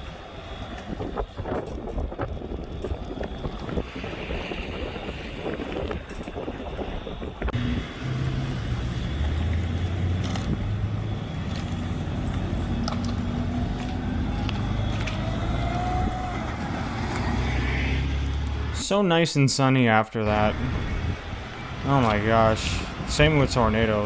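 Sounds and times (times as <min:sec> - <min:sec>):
vehicle engine running: 0:07.5 - 0:18.8, 0:20.3 - 0:24.0.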